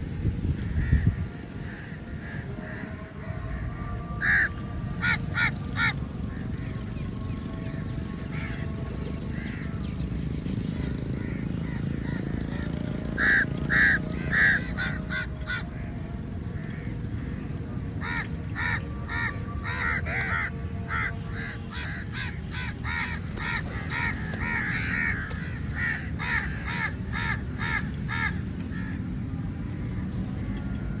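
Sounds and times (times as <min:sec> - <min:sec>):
crows cawing: 0:00.8 - 0:06.5, 0:10.8 - 0:17.0, 0:18.0 - 0:29.0.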